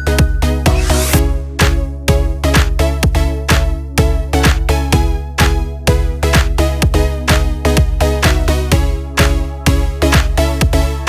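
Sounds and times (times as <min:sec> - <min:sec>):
electronic music with kick drum: 0:00.0 - 0:11.0.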